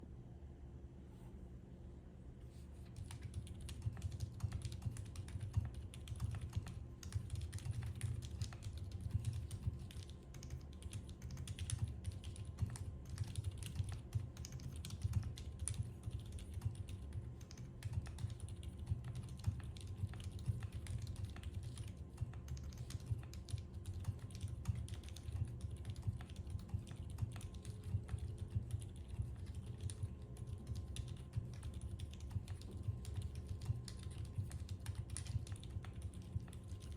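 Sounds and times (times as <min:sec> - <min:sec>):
muted mechanical keyboard typing: 0:02.9 - 0:36.9.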